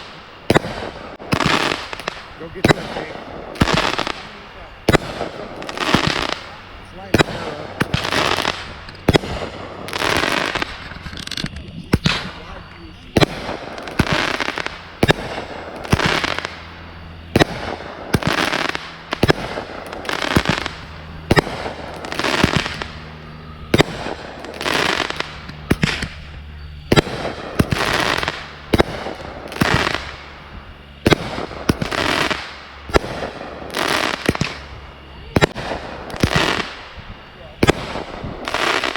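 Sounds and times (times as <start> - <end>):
crackling hiss: 0.0 - 38.9
firework cracks: 0.0 - 38.9.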